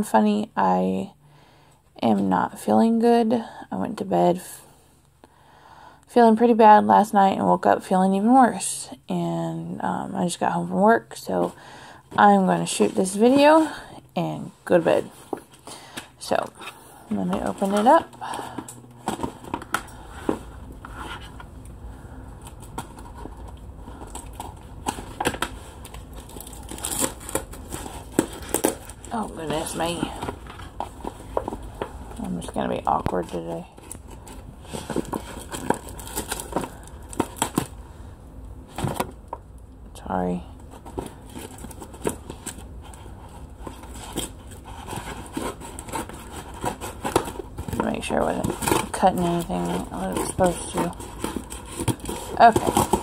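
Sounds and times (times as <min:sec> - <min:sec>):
low steady hum: 0:00.0 - 0:53.0
blade cutting paper envelope: 0:43.9 - 0:53.0.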